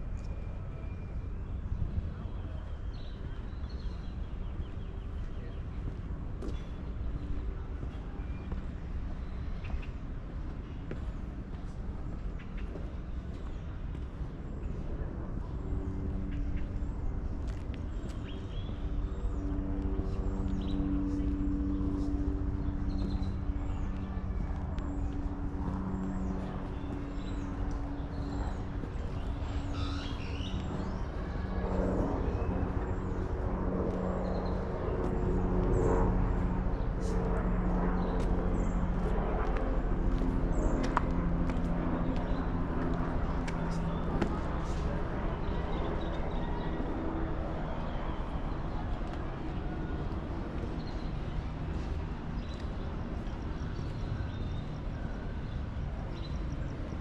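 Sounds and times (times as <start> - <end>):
low hum and rumble: 0.0 - 57.0
small birds chirping: 17.4 - 37.2.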